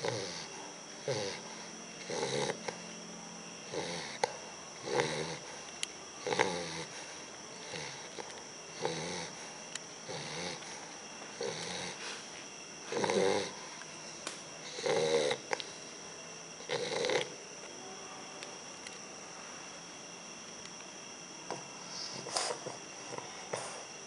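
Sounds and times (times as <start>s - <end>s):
puppy snoring: 0.0s - 2.9s, 3.6s - 5.6s, 6.2s - 13.7s, 14.6s - 15.9s, 16.6s - 17.4s.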